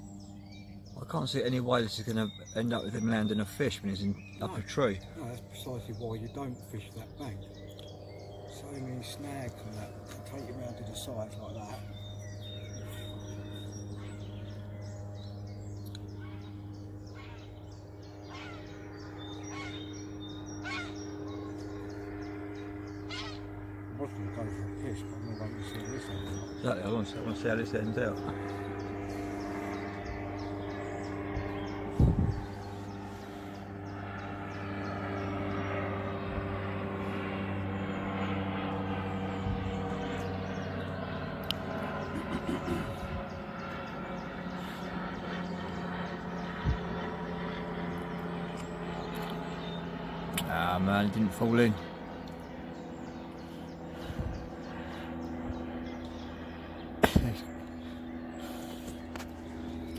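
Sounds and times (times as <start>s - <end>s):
engine drone: 0.0s - 59.9s
small birds chirping: 0.0s - 59.9s
steady low hum: 0.0s - 59.9s
crows cawing: 16.1s - 23.7s.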